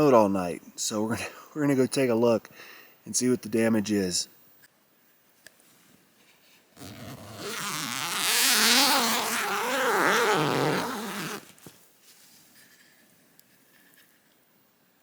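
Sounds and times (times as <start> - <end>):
tent zipper being pulled open: 6.8 - 11.6.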